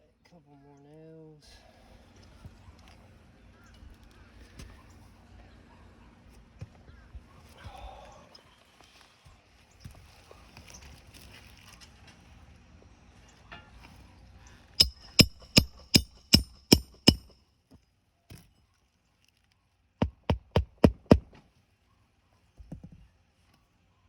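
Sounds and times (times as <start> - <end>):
hammer striking roofing nails: 14.8 - 17.4, 20.0 - 21.4.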